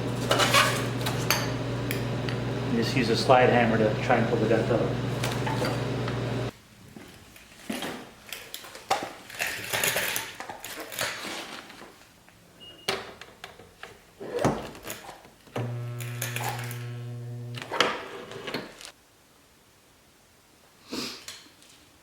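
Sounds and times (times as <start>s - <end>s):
metal parts clattering: 9.3s - 11.2s.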